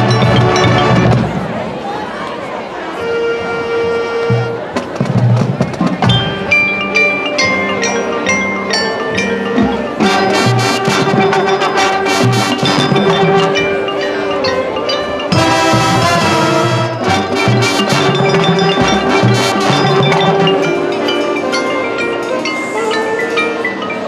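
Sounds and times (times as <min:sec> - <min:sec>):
mallet percussion notes: 0:00.0 - 0:01.6, 0:03.6 - 0:24.0
marching band playing: 0:00.0 - 0:01.8, 0:02.8 - 0:24.0.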